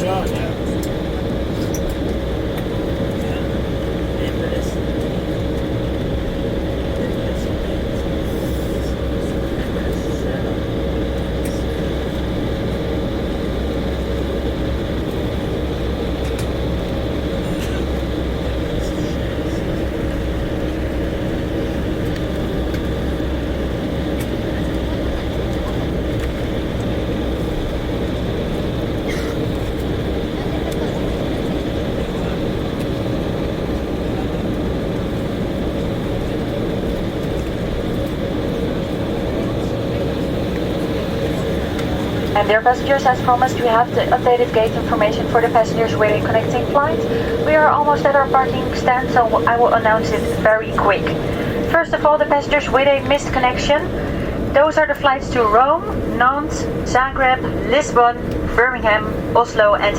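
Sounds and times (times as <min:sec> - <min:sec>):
aircraft cabin rumble: 0:00.0 - 0:59.9
faint steady hum: 0:08.8 - 0:59.9
steady hum-like tone: 0:39.0 - 0:59.9.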